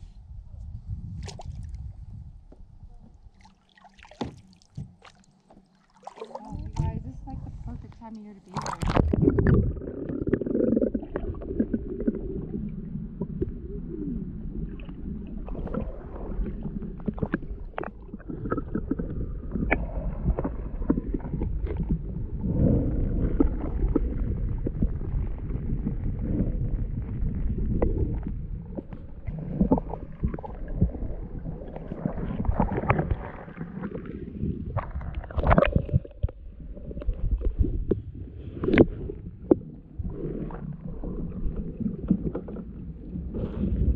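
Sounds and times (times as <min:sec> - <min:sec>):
low rumble on microphone: 0:00.0 - 0:03.4, 0:06.3 - 0:43.9
water splashing against hull: 0:00.6 - 0:43.9
paddle strokes: 0:02.5 - 0:09.4.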